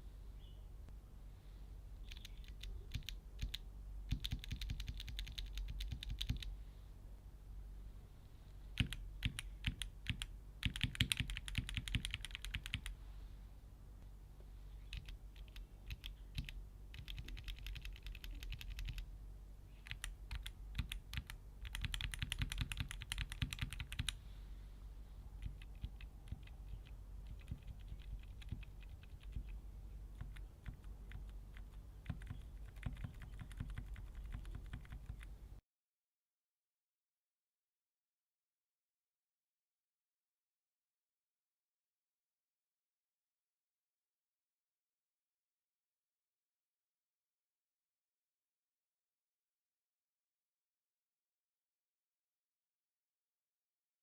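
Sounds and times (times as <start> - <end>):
mechanical keyboard typing: 2.1 - 6.5, 8.8 - 12.9, 14.9 - 19.1, 19.8 - 24.2, 25.4 - 29.6, 30.2 - 35.3.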